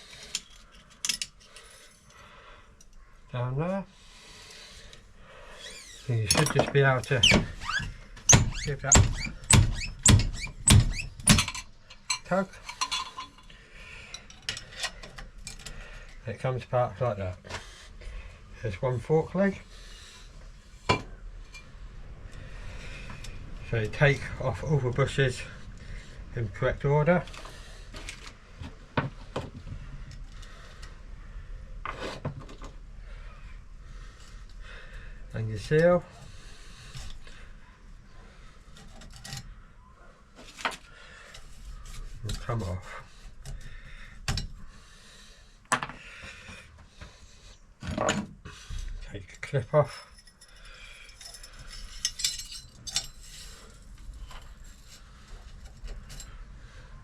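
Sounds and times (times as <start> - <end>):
small metal parts clinking: 0.2 - 2.1, 6.2 - 7.3, 11.2 - 13.5, 49.9 - 55.0.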